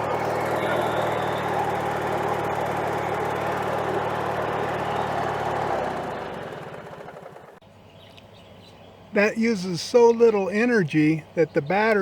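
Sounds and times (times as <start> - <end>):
lawn mower engine running: 0.0 - 7.6.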